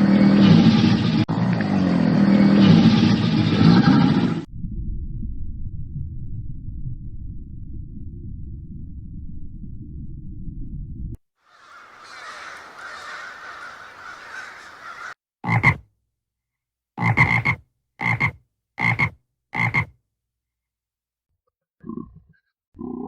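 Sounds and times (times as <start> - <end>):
low rumble: 0.0 - 11.2
short loud animal calls: 11.5 - 15.8.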